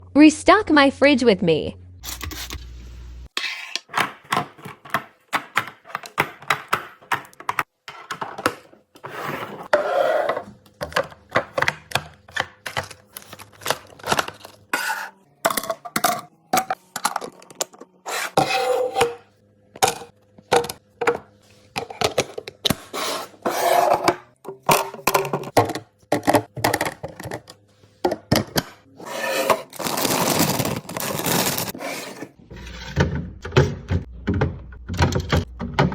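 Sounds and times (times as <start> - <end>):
containers clinking and clattering: 3.4 - 33.1
packaging rustling: 29.4 - 31.8.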